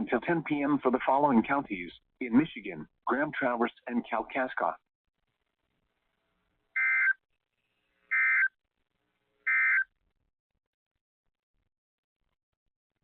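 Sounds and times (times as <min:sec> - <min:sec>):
data tone bursts: 0:06.8 - 0:07.2, 0:08.1 - 0:08.5, 0:09.5 - 0:09.8.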